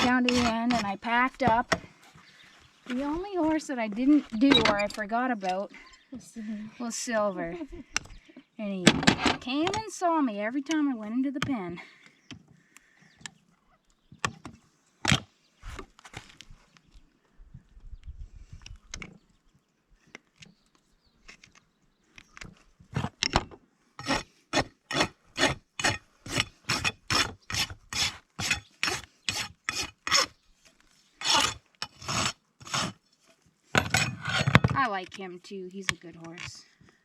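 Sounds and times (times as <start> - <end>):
rasp filing a hoof: 0.0 - 2.2, 24.0 - 36.6.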